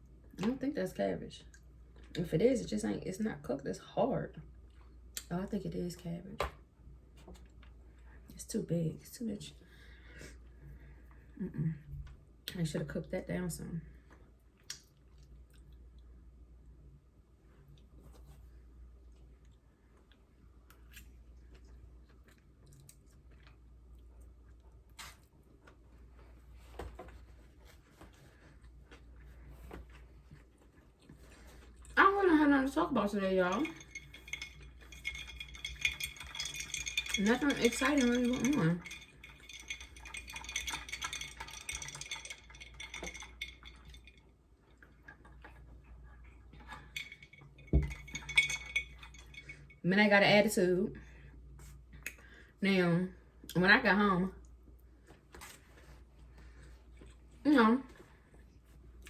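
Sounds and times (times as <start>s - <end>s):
chewing and crunching food: 14.0s - 16.2s, 19.0s - 26.5s, 33.4s - 49.8s, 56.5s - 57.4s.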